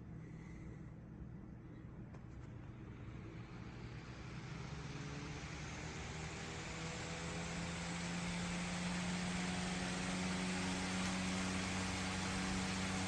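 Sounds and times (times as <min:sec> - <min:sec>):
electric fan running: 0:03.6 - 0:13.0.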